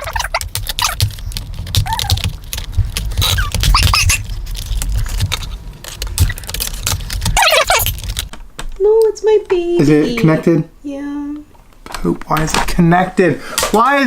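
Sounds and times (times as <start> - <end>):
plastic squeaks: 0.0 - 8.4
plastic laptop parts clicking and rattling: 0.0 - 8.8.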